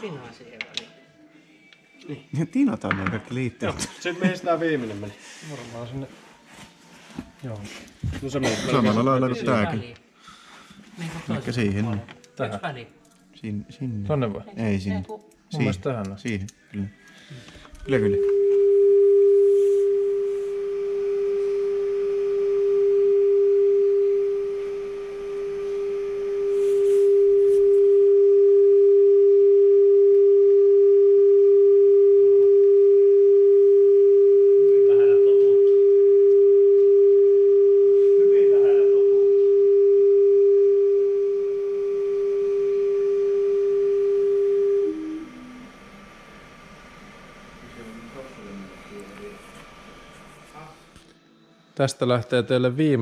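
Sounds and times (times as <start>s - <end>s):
steady pure test tone: 17.8s - 51.0s.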